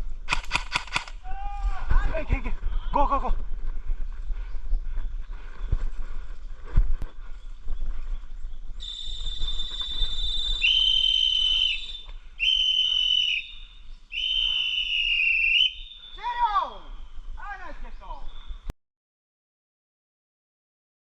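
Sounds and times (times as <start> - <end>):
long high whistle blast: 8.8 - 16.2
lower whistle blasts: 8.8 - 16.4.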